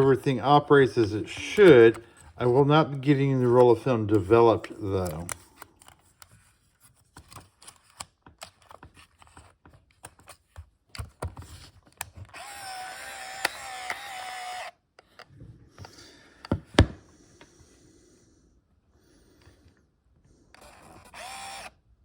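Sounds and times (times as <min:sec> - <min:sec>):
camera motor whirring: 0:12.1 - 0:15.3, 0:20.5 - 0:21.8
sharp camera clicks: 0:12.3 - 0:14.7, 0:20.6 - 0:21.7.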